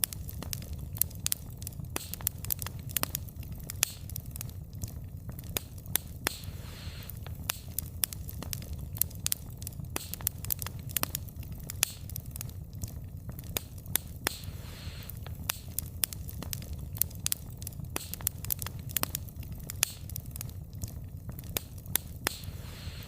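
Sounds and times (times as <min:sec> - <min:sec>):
low rumble of flame: 0:00.0 - 0:23.0
wood fire crackling and popping: 0:00.0 - 0:23.0
short hiss: 0:06.3 - 0:07.2, 0:14.3 - 0:15.2, 0:22.3 - 0:23.0.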